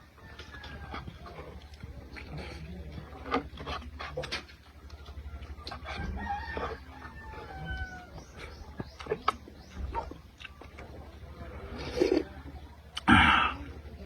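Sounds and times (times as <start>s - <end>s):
rooster crowing: 6.0s - 8.2s
eating clicks and smacks: 8.4s - 11.0s.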